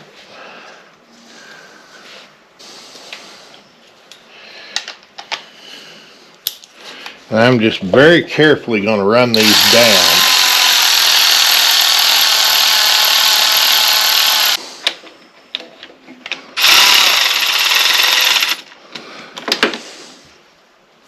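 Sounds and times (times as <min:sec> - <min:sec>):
handheld power tool running: 0:09.4 - 0:14.6, 0:16.6 - 0:18.8.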